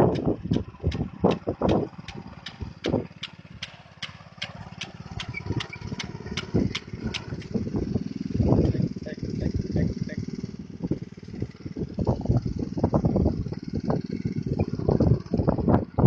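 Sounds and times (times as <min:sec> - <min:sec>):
sharp clicking: 0:00.0 - 0:07.6
small engine running: 0:00.0 - 0:16.0.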